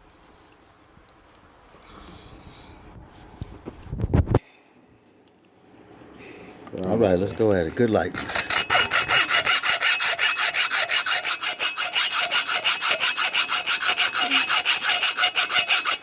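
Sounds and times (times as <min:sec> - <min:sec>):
saw cutting through steel: 0:08.1 - 0:16.0.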